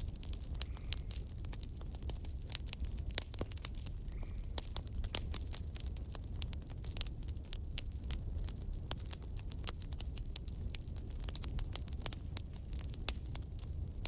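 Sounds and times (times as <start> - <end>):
low rumble of fire: 0.0 - 14.0
wood fire crackling: 0.0 - 14.0.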